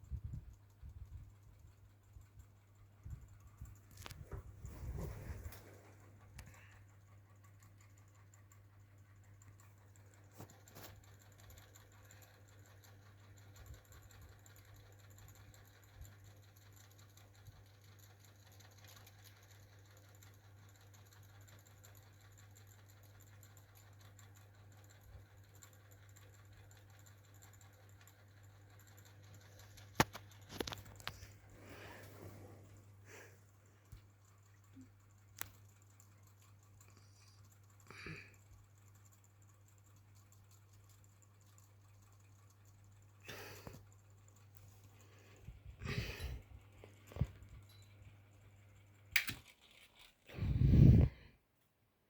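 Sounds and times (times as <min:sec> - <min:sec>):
fan ticking: 0:00.0 - 0:51.1
ceiling fan humming: 0:00.0 - 0:52.0
sharp click: 0:49.1 - 0:49.8.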